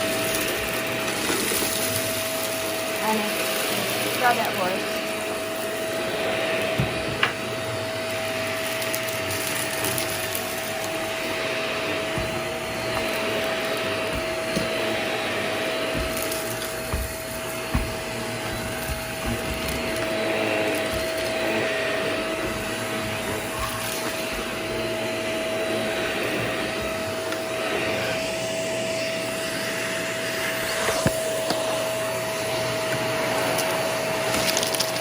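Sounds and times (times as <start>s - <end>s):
vacuum cleaner whining: 0.0s - 35.0s.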